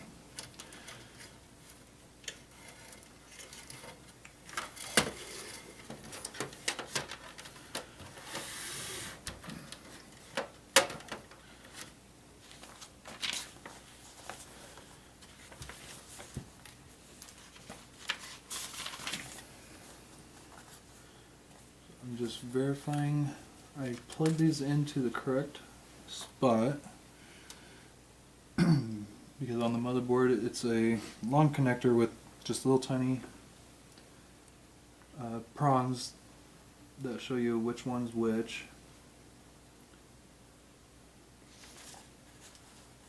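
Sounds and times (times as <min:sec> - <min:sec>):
wires rustling: 0:00.0 - 0:26.7, 0:41.4 - 0:43.0.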